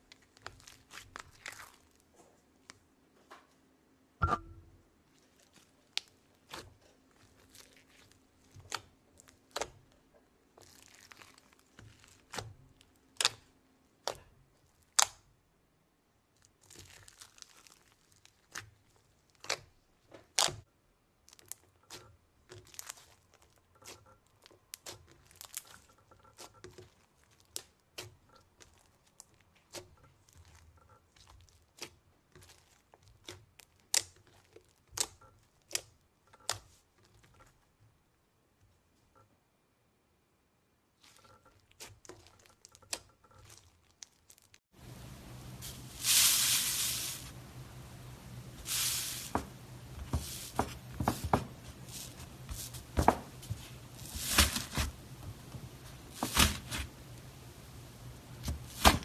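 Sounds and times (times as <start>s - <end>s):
crinkly crackling rustle: 0.0s - 2.8s, 5.1s - 9.8s, 10.5s - 13.5s, 16.4s - 20.6s, 21.2s - 35.7s, 41.0s - 45.0s, 50.1s - 57.2s.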